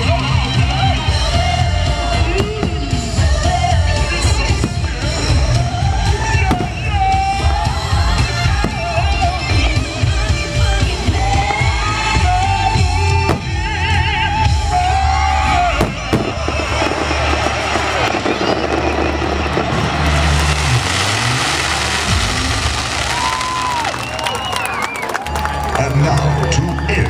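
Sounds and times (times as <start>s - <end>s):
fireworks exploding: 0.0s - 25.2s.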